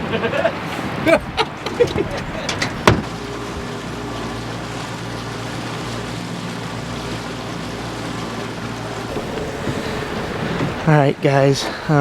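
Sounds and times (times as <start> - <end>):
boat engine running: 3.2 - 12.0.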